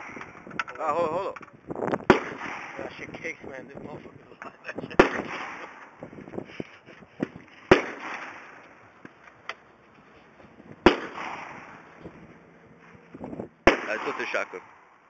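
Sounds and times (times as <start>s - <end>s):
faint distant gunshot cracks: 2.0s - 3.1s, 4.9s - 6.0s, 7.7s - 8.8s, 10.8s - 11.9s, 13.6s - 14.9s
loud gunshots echoing: 2.0s - 3.2s, 4.9s - 6.0s, 7.7s - 8.7s, 10.8s - 12.0s, 13.6s - 14.9s.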